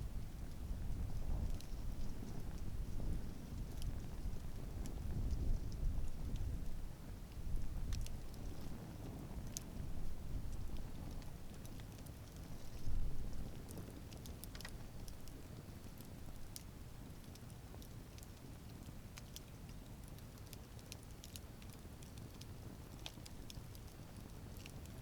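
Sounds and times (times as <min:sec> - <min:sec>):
low rumble of flames: 0:00.0 - 0:25.0
wood crackling and popping: 0:00.1 - 0:25.0.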